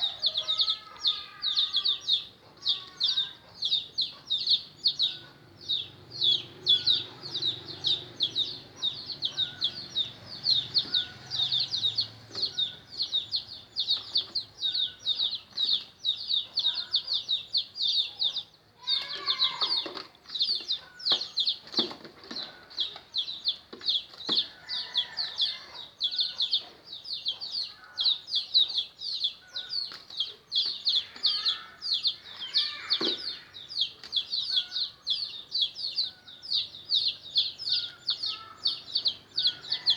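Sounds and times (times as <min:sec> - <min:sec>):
hen clucking: 0:00.0 - 0:17.4
chicks peeping: 0:00.0 - 0:39.9.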